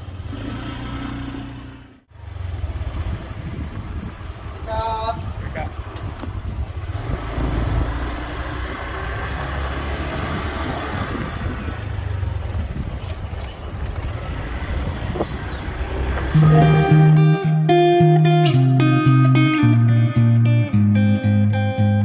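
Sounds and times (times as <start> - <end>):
road noise: 0.0 - 17.3
scooter engine: 0.0 - 17.3
wind buffeting microphone: 2.2 - 17.3.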